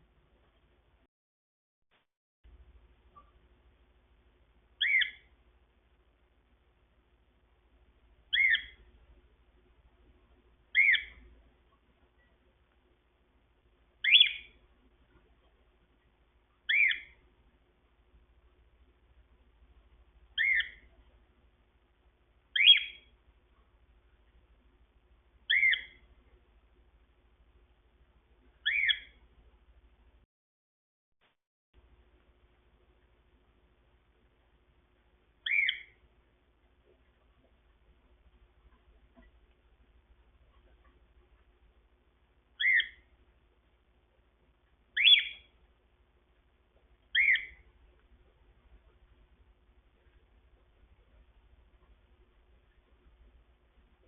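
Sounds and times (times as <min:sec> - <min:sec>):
cockatiel calling: 0:04.8 - 0:05.3, 0:08.3 - 0:08.8, 0:10.7 - 0:11.2, 0:14.0 - 0:14.6, 0:16.7 - 0:17.2, 0:20.4 - 0:20.9, 0:22.5 - 0:23.1, 0:25.5 - 0:26.0, 0:28.6 - 0:29.2, 0:35.4 - 0:36.0, 0:42.6 - 0:43.1, 0:45.0 - 0:45.5, 0:47.1 - 0:47.7.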